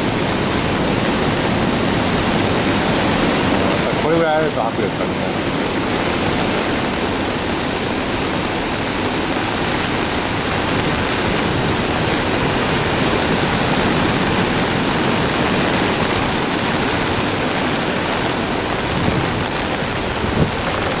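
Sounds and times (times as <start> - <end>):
waves breaking on shore: 0.0 - 21.0.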